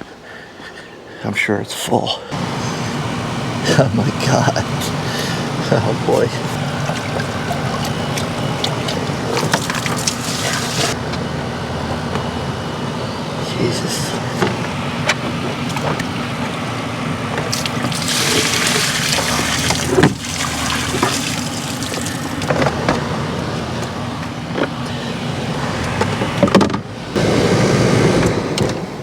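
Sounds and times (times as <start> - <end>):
water pouring and splashing: 6.5 - 11.0, 17.5 - 22.5.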